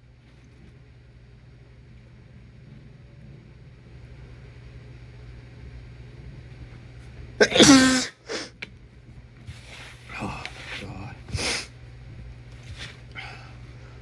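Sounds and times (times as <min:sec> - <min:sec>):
man sneezing: 0:07.4 - 0:08.5.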